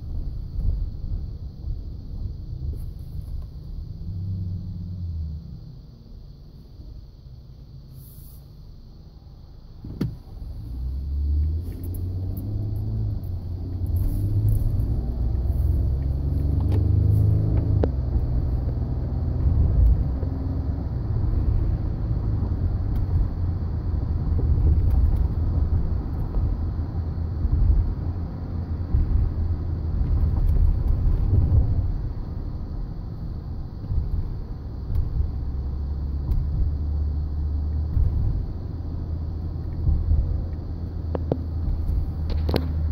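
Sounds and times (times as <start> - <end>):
pickup truck engine rumbling: 10.7 - 42.9.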